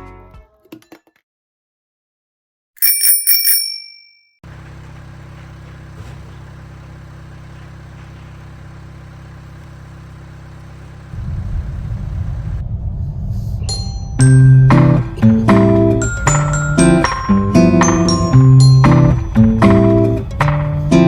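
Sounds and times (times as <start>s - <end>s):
ringing chime: 2.8s - 4.3s, 13.7s - 15.0s, 16.0s - 19.4s
car engine and road noise: 4.4s - 12.8s, 13.7s - 21.0s.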